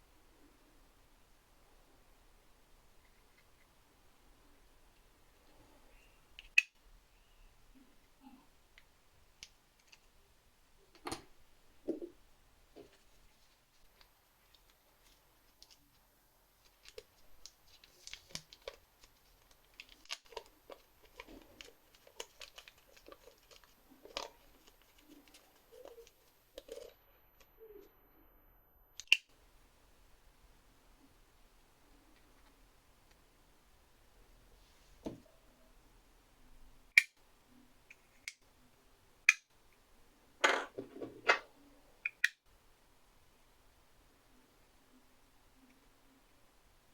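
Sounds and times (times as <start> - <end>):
faint high-pitched whine: 0.0 - 46.9
plastic packaging clicks and crinkles: 16.6 - 27.0
sharp handling clicks: 29.0 - 29.3.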